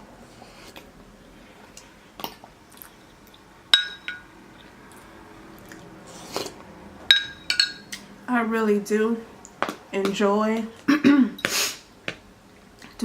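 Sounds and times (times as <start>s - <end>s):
cutlery clinking against dish: 3.8s - 4.2s, 7.1s - 8.0s
chewing: 4.6s - 6.6s.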